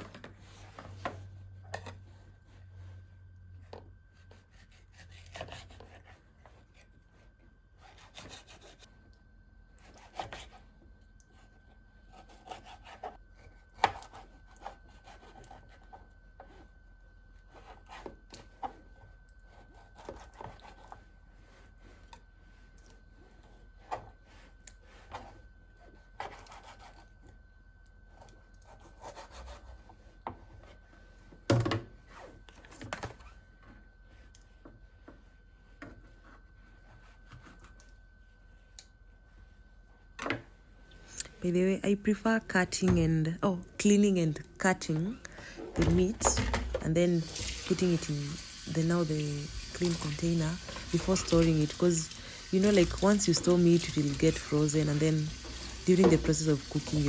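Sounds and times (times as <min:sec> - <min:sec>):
knife cutting raw meat: 0:04.2 - 0:06.2, 0:12.1 - 0:16.0.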